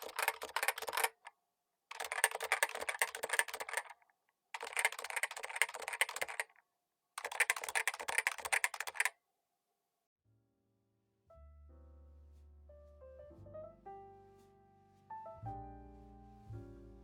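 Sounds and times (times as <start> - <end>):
rapid keyboard typing: 0.0 - 1.3, 1.9 - 4.0, 4.6 - 6.6, 7.2 - 9.1.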